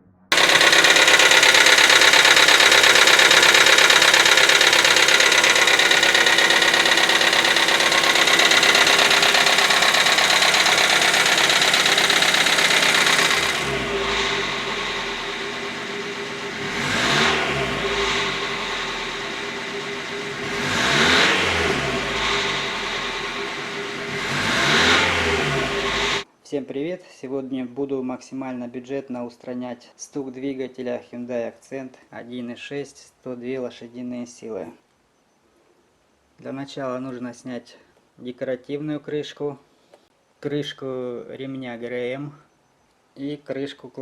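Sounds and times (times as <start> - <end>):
engine revving: 0.3 - 26.2
engine with rapid tapping knock: 0.3 - 26.2.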